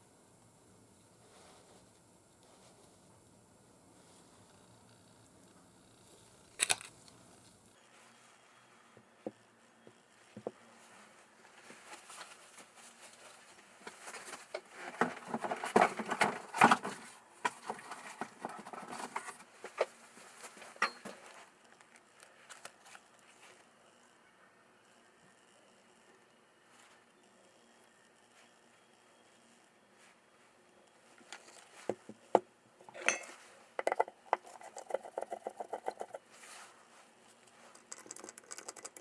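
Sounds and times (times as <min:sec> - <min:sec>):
rustling and crinkling: 0:07.7 - 0:24.2, 0:28.0 - 0:33.8, 0:35.5 - 0:39.0.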